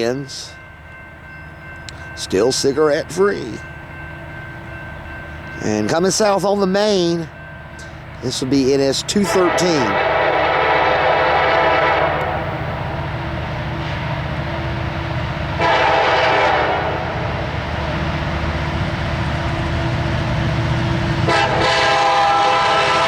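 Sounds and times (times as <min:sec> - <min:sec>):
diesel engines rumbling: 0:00.0 - 0:23.0
locomotive air horn blasts: 0:09.2 - 0:12.6, 0:15.6 - 0:17.2, 0:21.2 - 0:23.0.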